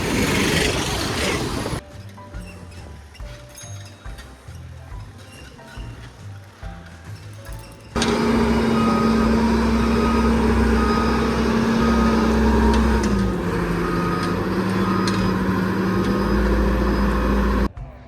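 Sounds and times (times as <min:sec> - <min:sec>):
vehicle engine running: 0:00.0 - 0:01.8, 0:08.0 - 0:17.7.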